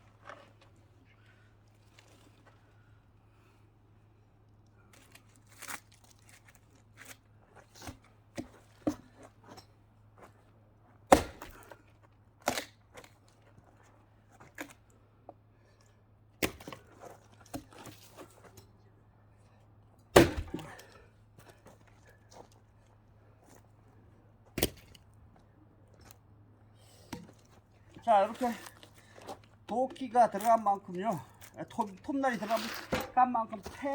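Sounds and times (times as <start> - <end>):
axe chopping wood: 11.1 - 11.8, 12.4 - 12.7, 16.4 - 17.9, 20.1 - 21.0, 24.6 - 25.0.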